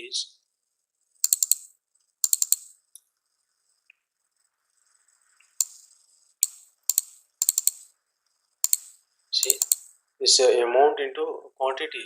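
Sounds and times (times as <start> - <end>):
computer keyboard keystrokes: 1.2 - 2.8, 5.4 - 7.9, 8.6 - 10.0.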